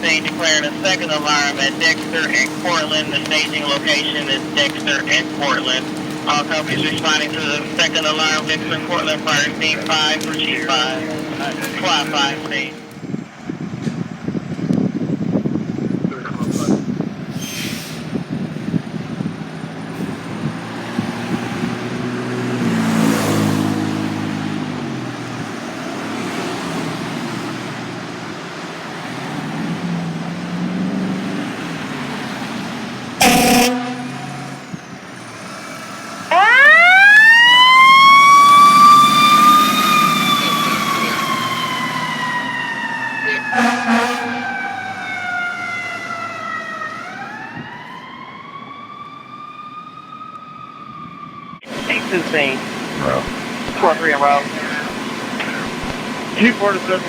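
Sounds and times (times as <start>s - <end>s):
fire truck engine revving: 0.0s - 57.0s
air horn blast: 33.2s - 34.8s, 43.5s - 44.8s
mechanical siren wailing: 33.2s - 35.2s, 36.2s - 52.4s.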